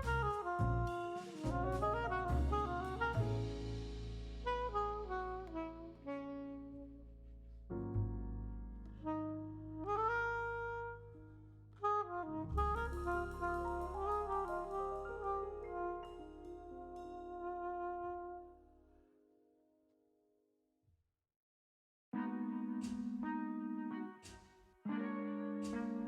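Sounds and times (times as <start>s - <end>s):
jazzy instrumental music: 0.0s - 18.8s, 22.2s - 26.0s.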